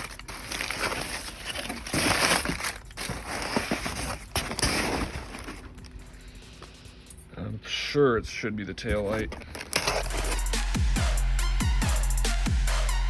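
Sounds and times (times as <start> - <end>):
packing material crinkling: 0.0 - 6.2, 8.9 - 10.5.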